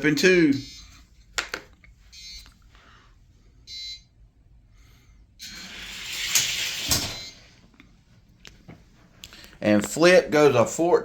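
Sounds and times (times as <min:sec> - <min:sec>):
toy cars rolling down a track: 0:05.5 - 0:07.2.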